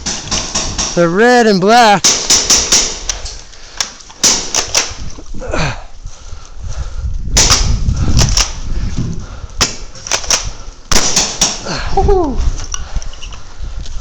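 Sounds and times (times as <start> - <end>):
airsoft guns firing: 0.0 - 1.0, 2.0 - 3.2, 4.2 - 5.0, 9.6 - 11.7.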